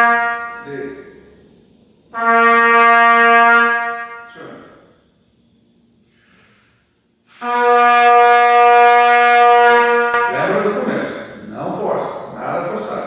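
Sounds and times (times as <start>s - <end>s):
trumpet steady note: 0.0s - 1.3s, 2.0s - 4.9s, 7.3s - 11.6s
short breath: 4.6s - 7.4s.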